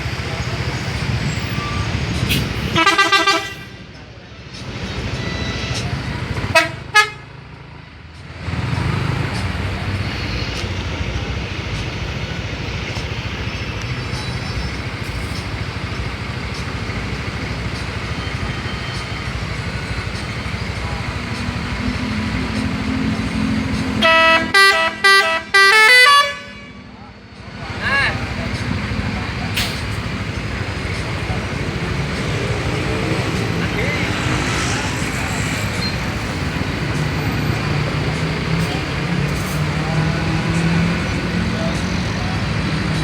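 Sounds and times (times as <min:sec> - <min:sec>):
vehicle engine and road noise: 0:00.0 - 0:43.0
multi-tone musical horn: 0:02.7 - 0:03.7, 0:06.5 - 0:07.2, 0:21.6 - 0:26.9.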